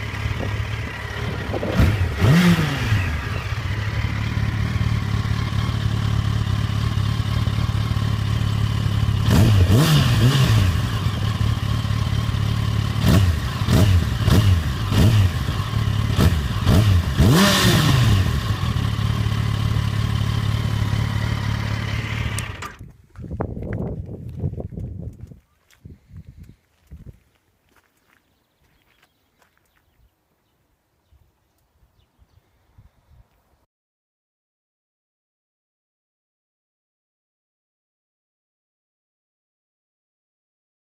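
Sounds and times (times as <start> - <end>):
motorcycle engine revving: 0.0 - 22.9.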